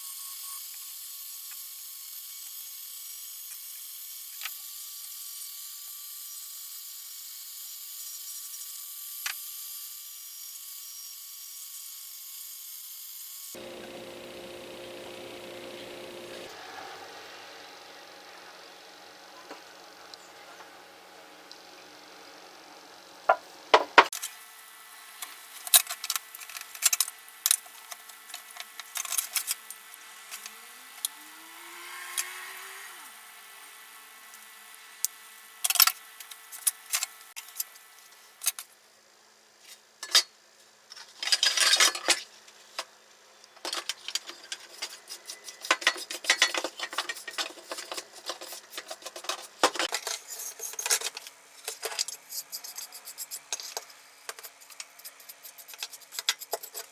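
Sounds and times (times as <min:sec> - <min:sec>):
metal tools clinking and scraping: 0:25.6 - 0:29.7, 0:40.0 - 0:40.3, 0:40.9 - 0:42.3, 0:43.6 - 0:56.9.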